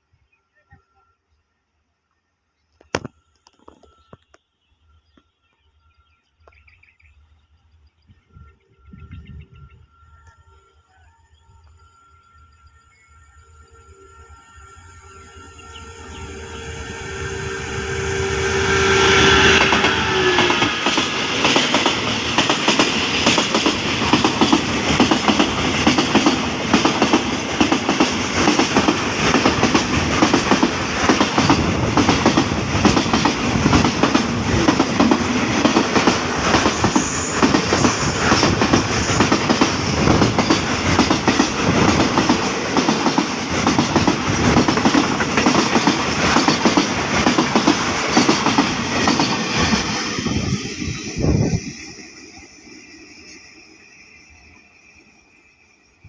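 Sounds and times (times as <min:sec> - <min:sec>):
freight train wheels clattering: 0:18.0 - 0:52.1.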